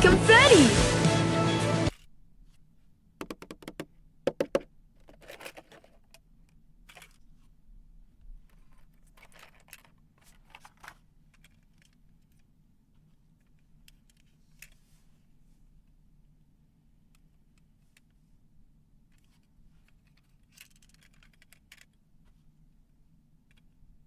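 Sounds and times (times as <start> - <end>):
packaging rustling: 3.2 - 6.2, 8.5 - 12.0
plastic toy pieces clicking: 3.2 - 7.2, 8.5 - 12.4, 20.0 - 22.0.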